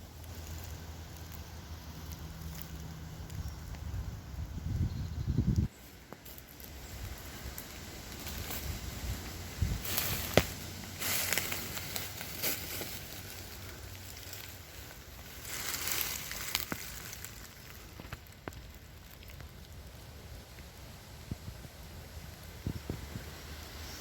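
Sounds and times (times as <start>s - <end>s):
leaves crackling underfoot: 0.0s - 24.0s
twigs snapping: 6.1s - 19.9s.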